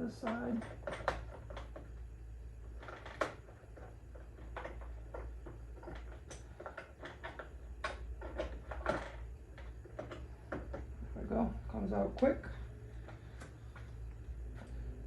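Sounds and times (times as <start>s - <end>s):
low steady hum: 0.0s - 15.0s
plastic and rubber clicks and knocks: 0.3s - 1.9s, 2.8s - 10.9s.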